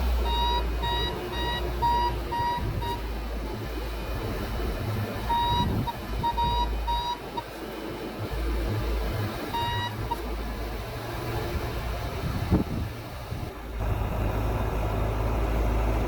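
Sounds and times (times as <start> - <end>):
low engine-like rumble: 0.0 - 16.0
electronic warning beeps: 0.2 - 3.1, 5.2 - 7.6, 9.4 - 10.3.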